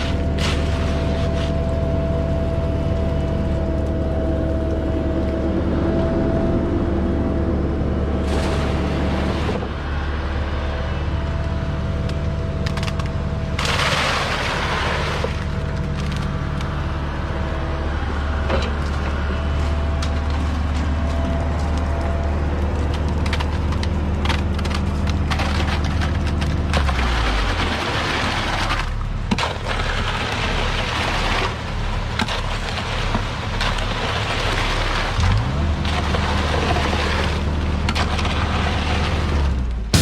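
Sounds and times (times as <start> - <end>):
constant whine: 0.0 - 27.5, 39.4 - 40.0
heavy diesel equipment running: 0.0 - 40.0.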